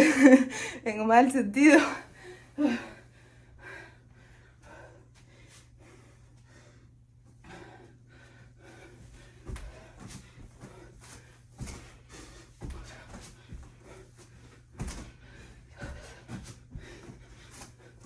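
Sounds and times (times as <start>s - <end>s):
woman panting: 0.0s - 1.0s, 1.6s - 18.0s.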